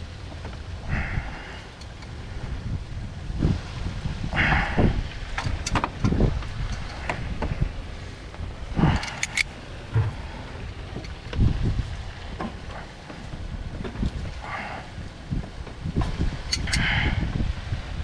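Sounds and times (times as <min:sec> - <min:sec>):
wind buffeting microphone: 0:00.0 - 0:18.0
clicks and knocks of tools: 0:05.4 - 0:07.2, 0:08.9 - 0:09.5.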